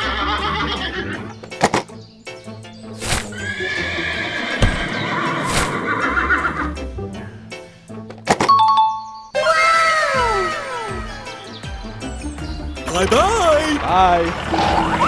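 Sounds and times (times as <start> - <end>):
background music: 0.0 - 15.0
horse whinny: 3.3 - 6.7.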